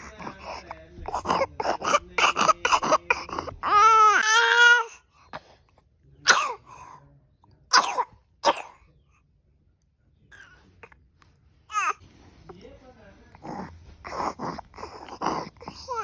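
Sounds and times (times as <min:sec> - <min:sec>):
young child coughing: 0:06.3 - 0:06.7, 0:07.7 - 0:08.8.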